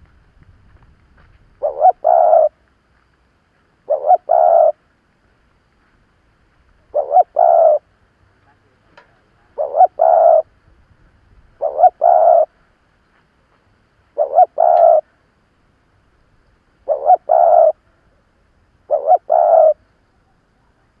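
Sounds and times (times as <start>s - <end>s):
dove cooing: 1.6s - 2.6s, 3.8s - 4.8s, 6.8s - 7.9s, 9.4s - 10.5s, 11.5s - 12.6s, 14.1s - 15.2s, 16.8s - 18.2s, 18.8s - 19.9s.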